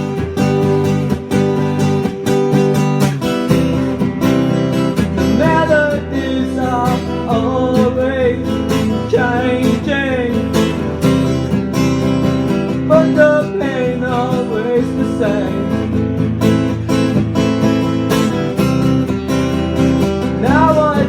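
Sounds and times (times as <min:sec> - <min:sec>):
strummed acoustic guitar: 0:00.0 - 0:21.0
man singing: 0:05.1 - 0:11.1, 0:12.7 - 0:16.2, 0:20.2 - 0:21.0.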